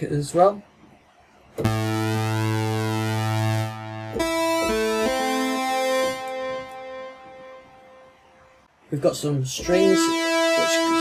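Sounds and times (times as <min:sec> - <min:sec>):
synthesizer lead notes: 0:01.4 - 0:08.7, 0:09.6 - 0:11.0.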